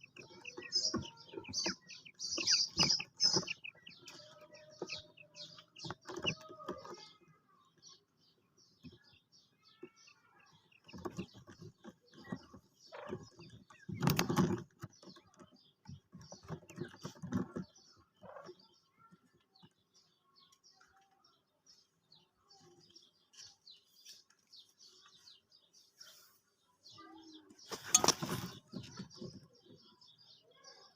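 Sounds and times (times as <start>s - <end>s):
birds chirping: 0.0s - 30.9s
rustling or knocking bursts: 27.6s - 29.8s.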